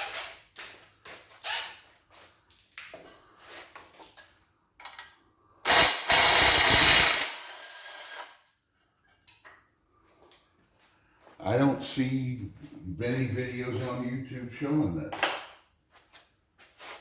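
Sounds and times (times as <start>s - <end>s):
tools and metal parts clinking: 4.8s - 7.4s
impact wrench running: 5.7s - 8.3s.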